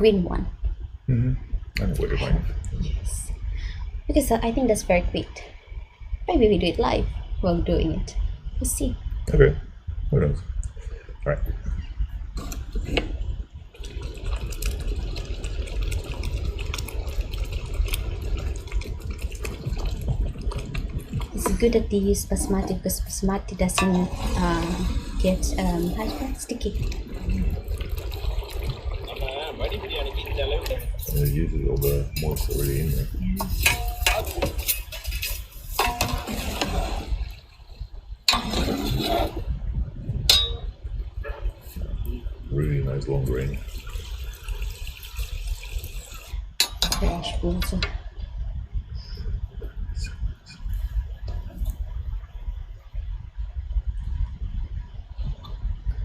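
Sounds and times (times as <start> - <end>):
liquid sloshing and bubbling in pot: 0.0 - 56.0
steady low rumble: 0.0 - 56.0
metal utensils clinking on a pot: 33.4 - 36.7, 40.3 - 40.7, 46.6 - 47.8.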